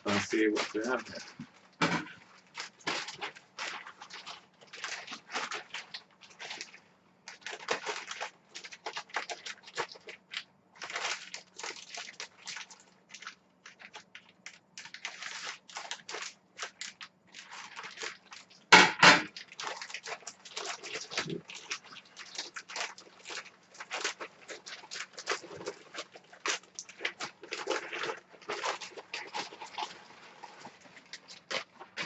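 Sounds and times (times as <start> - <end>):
plastic packaging crinkling: 0.0 - 32.0.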